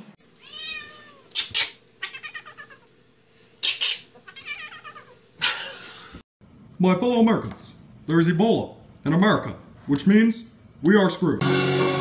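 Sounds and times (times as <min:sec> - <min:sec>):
cat yowling: 0:00.4 - 0:02.9, 0:04.2 - 0:05.2
cat hissing: 0:00.4 - 0:05.2.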